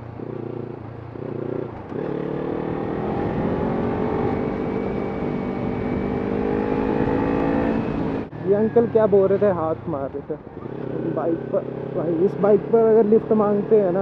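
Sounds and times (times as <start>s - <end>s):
motorcycle engine accelerating: 0.0s - 14.0s.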